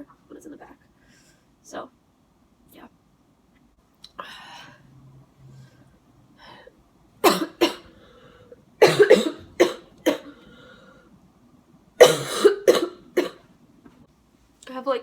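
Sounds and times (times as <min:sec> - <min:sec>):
person coughing: 0:07.2 - 0:07.9, 0:08.8 - 0:10.4, 0:12.0 - 0:13.4.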